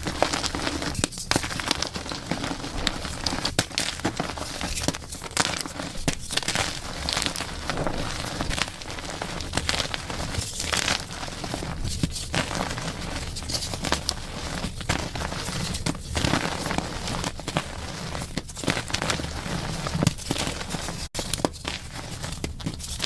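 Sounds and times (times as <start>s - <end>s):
chalk crunching and crackling: 0.0s - 23.0s.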